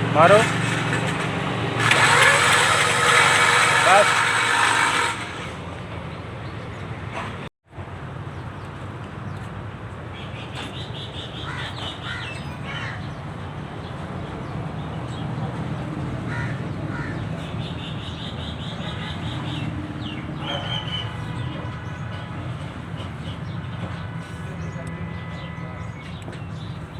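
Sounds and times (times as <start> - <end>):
small engine idling with misfire: 0.0 - 5.7
crows cawing: 11.4 - 13.1, 16.3 - 17.4.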